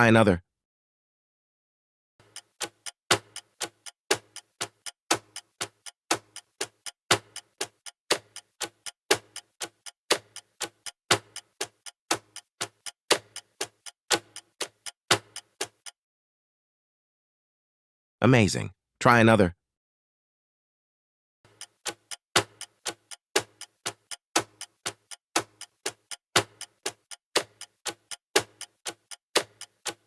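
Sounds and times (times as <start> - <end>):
clock ticking: 2.2 - 16.0, 21.5 - 30.0.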